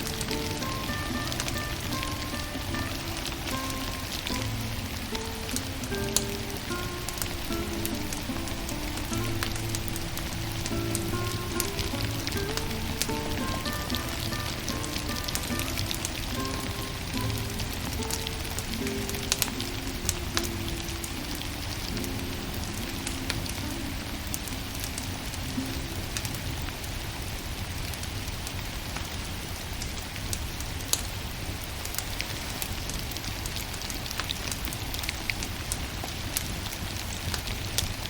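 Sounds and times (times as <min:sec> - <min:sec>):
soft music notes: 0:00.0 - 0:27.6
firewood crackling and popping: 0:00.0 - 0:38.0.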